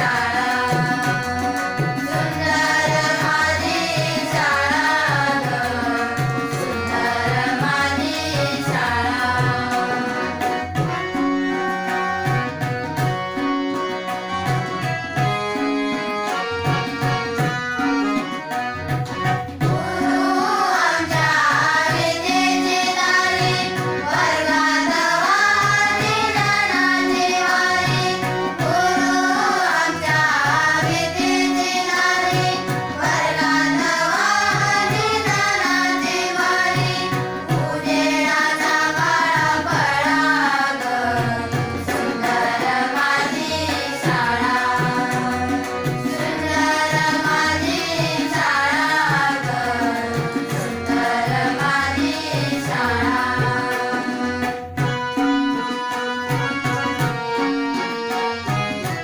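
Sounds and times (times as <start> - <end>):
girls singing together: 0.0 - 10.6, 19.6 - 54.6
harmonium chords: 0.0 - 59.0
tabla rhythm: 0.0 - 59.0.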